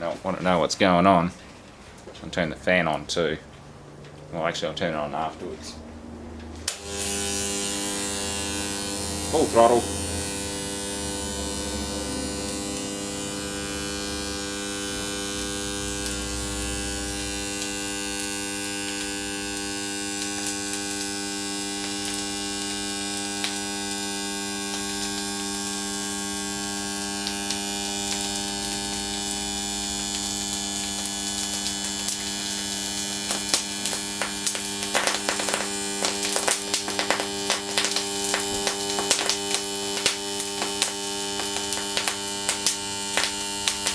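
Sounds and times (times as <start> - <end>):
electric motor humming and buzzing: 5.8 - 43.9
crackling and popping: 12.5 - 43.9.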